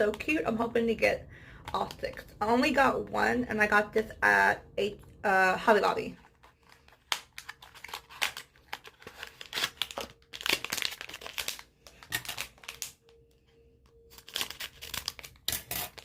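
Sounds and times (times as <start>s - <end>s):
packaging torn and crinkled: 6.2s - 13.1s, 14.1s - 16.0s.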